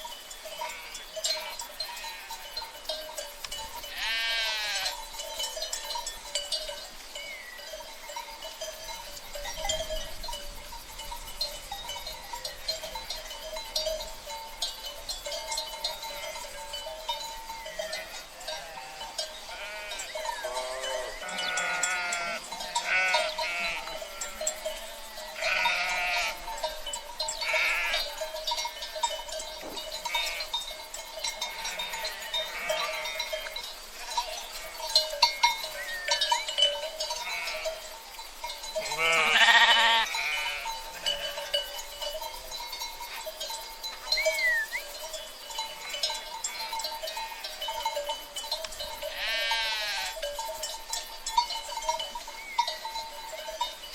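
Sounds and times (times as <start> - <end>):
sheep bleating: 3.9 - 4.9, 17.9 - 26.4, 27.4 - 28.1, 37.2 - 37.7, 38.8 - 41.4, 49.1 - 50.2.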